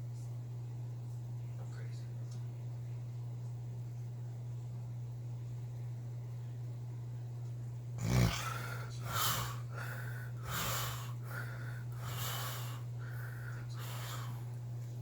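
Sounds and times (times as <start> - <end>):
steady low hum: 0.0 - 15.0
man snoring: 8.0 - 14.4.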